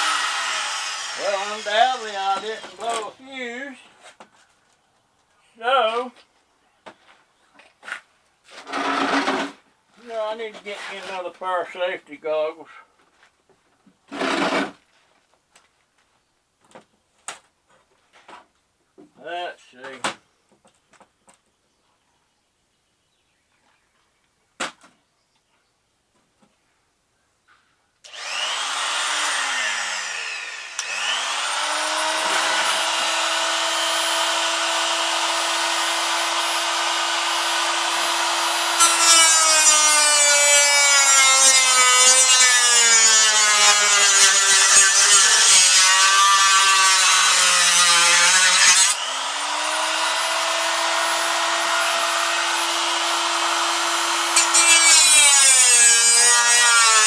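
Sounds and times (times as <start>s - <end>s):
loud grinding rasp: 0.0s - 3.1s, 28.1s - 57.0s
cut-off tool whine: 28.1s - 40.0s, 48.5s - 55.8s.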